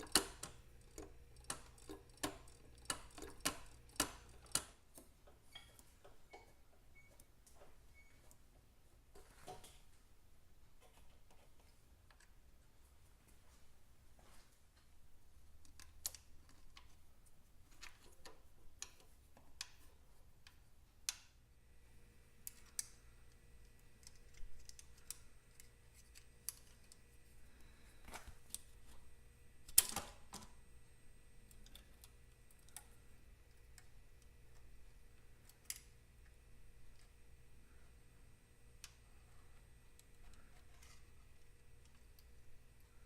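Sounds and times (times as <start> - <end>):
hand tools clicking and tapping: 0.0 - 7.3
faint steady hum: 0.0 - 43.0.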